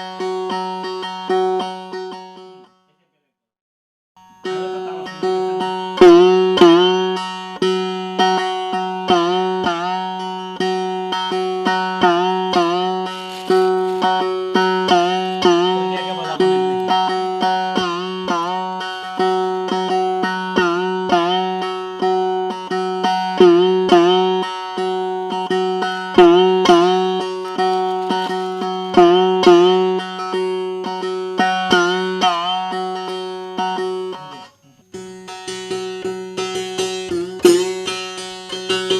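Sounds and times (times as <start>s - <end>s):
sitar-like plucked strings: 0.0s - 3.0s, 4.2s - 38.9s.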